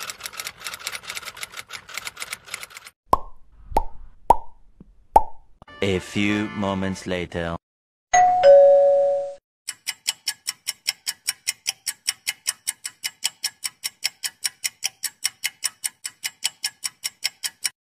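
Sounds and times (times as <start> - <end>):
two-note chime: 8.2 - 9.4
clock ticking: 9.7 - 17.8.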